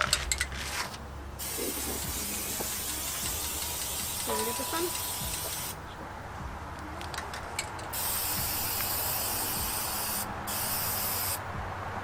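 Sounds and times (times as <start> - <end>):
aerosol can spraying: 1.4 - 5.8, 7.9 - 11.4.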